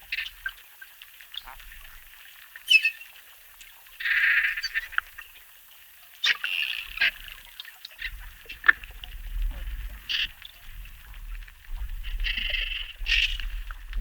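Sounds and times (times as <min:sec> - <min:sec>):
dolphins chirping and clicking: 0:02.7 - 0:03.2.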